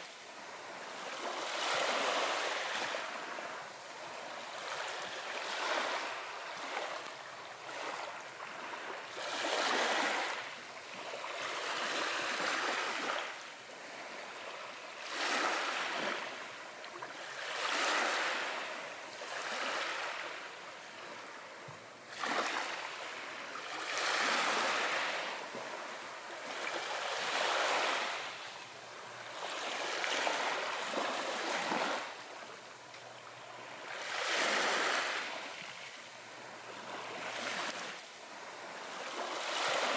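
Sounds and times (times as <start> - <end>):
small ocean waves washing in: 0.0 - 39.9.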